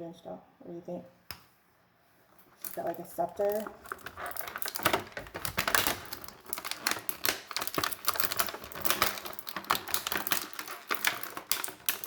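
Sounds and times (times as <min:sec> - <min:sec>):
plastic packaging crinkling: 0:02.5 - 0:12.0.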